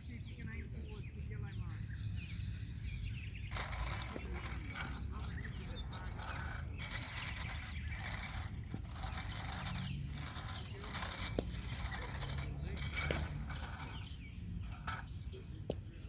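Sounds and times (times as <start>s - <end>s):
clay scraped into pitch surface: 3.5s - 15.3s.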